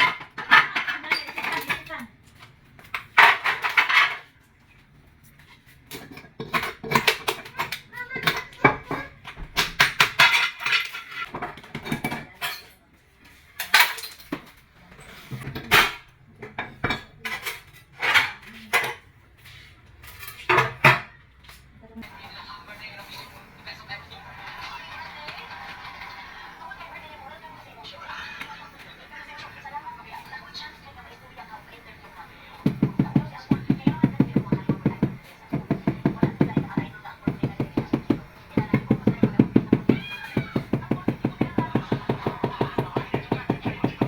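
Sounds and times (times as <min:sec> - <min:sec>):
tools scraping on ceramic tile: 0:05.4 - 0:21.0.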